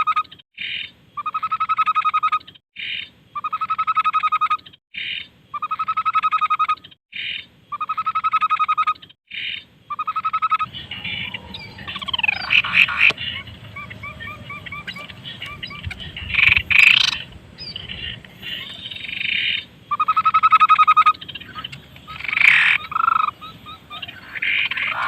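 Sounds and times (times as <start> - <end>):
bird whistling and trilling: 7.8 - 25.0
bird harsh chattering: 9.3 - 25.0.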